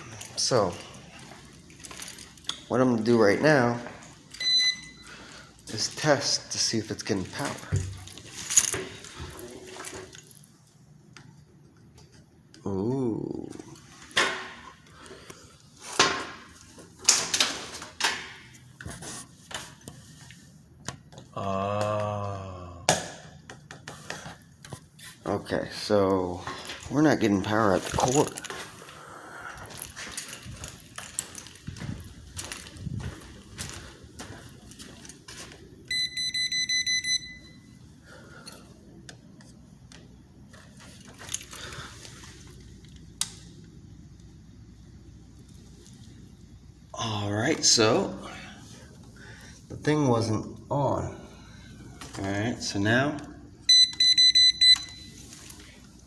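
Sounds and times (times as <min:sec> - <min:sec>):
rustling of handled objects: 0:00.0 - 0:10.8, 0:26.3 - 0:37.0, 0:40.3 - 0:43.0
voltage tester beeping: 0:04.4 - 0:05.1, 0:35.9 - 0:37.6, 0:53.7 - 0:55.2.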